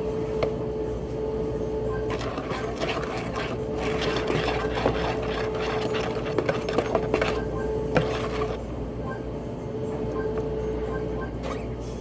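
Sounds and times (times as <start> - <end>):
steady hum: 0.0 - 12.0
utensils scraping a mixing bowl: 2.1 - 8.6.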